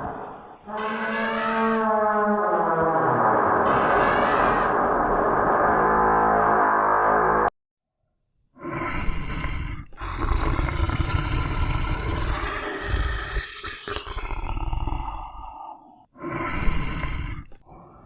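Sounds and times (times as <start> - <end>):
large animal roaring and growling: 3.6 - 4.9, 8.6 - 17.8.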